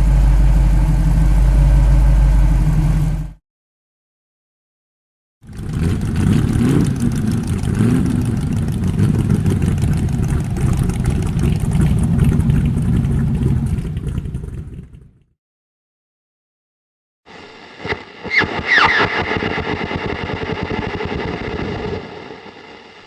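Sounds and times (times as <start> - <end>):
car engine revving: 0.0 - 3.3, 5.5 - 15.2.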